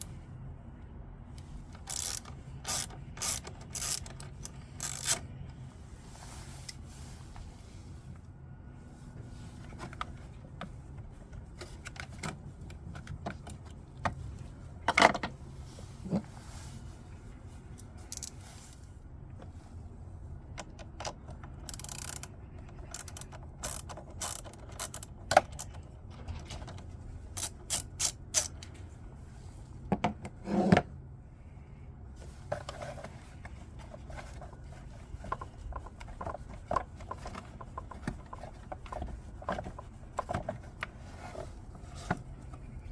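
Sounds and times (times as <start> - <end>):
socket ratchet clicking: 1.8 - 5.2, 18.1 - 18.3, 21.6 - 25.7, 27.4 - 28.6.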